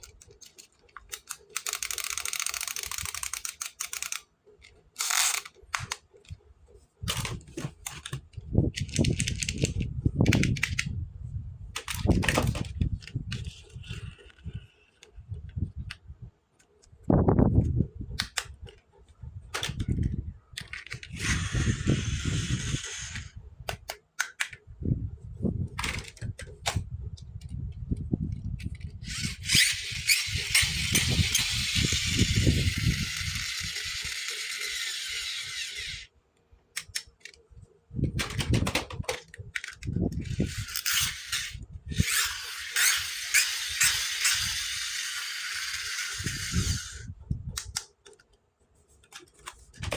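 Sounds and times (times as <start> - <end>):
plastic toys clicking and tapping: 0.0 - 6.4, 7.1 - 10.9, 19.5 - 21.3, 22.4 - 24.6, 36.7 - 37.4.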